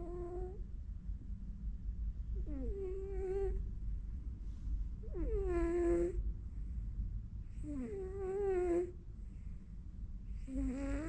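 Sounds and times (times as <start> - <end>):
cat snoring: 0.0 - 0.6, 2.4 - 3.6, 5.0 - 6.2, 7.5 - 9.0, 10.3 - 11.0.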